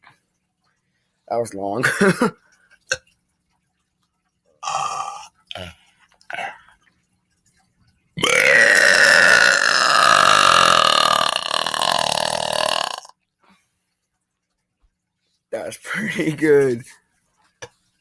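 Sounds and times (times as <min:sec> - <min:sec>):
person burping: 0:04.6 - 0:06.6, 0:08.2 - 0:13.1.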